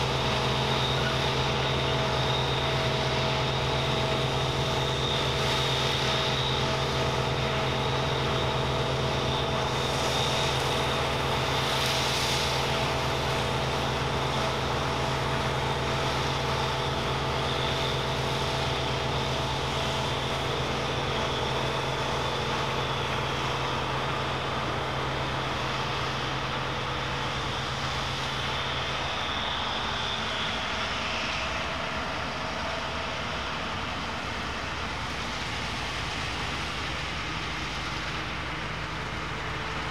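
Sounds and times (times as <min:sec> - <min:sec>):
combine harvester engine drone: 0:00.0 - 0:39.9.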